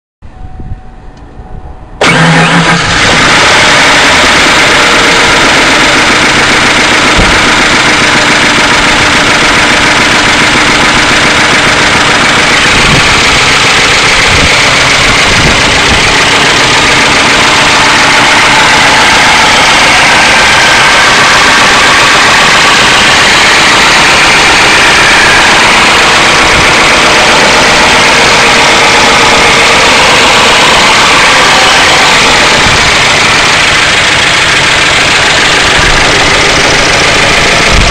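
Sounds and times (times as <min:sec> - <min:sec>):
car engine idling: 0:01.1 - 0:37.9.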